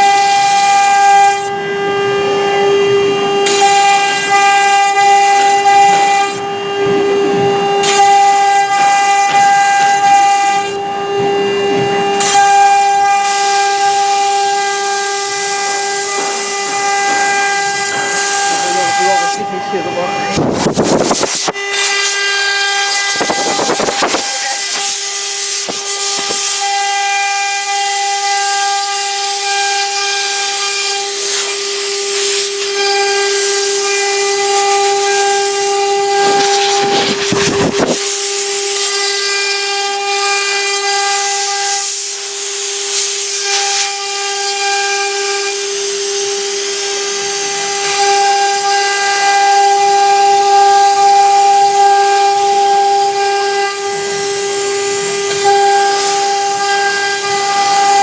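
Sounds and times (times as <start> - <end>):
spindle high whine: 35.1 - 38.1.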